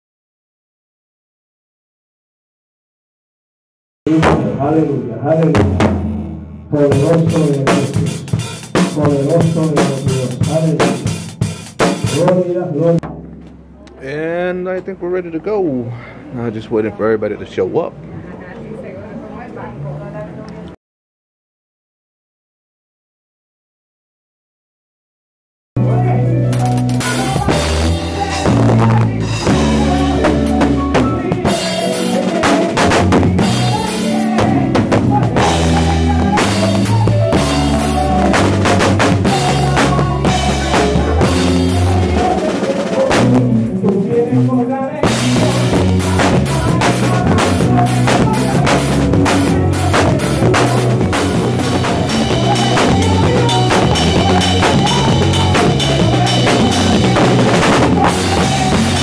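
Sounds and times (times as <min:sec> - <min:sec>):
bass drum and snare: 0:04.1 - 0:04.7, 0:05.4 - 0:12.4, 0:13.0 - 0:14.6, 0:26.6 - 0:43.8, 0:45.0 - 0:59.0
live band playing: 0:04.1 - 0:14.8, 0:25.8 - 0:59.0.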